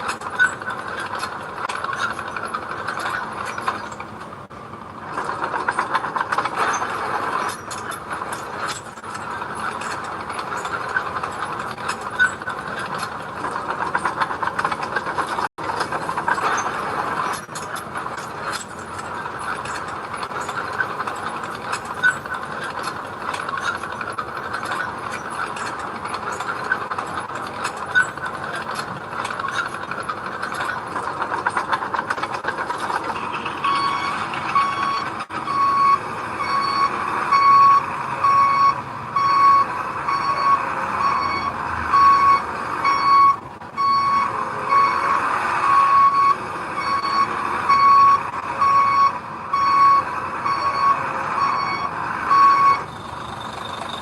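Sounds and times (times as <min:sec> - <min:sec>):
diesel machinery clattering: 0:00.0 - 0:54.0
reversing alarm beeping: 0:33.5 - 0:45.1, 0:45.7 - 0:54.0.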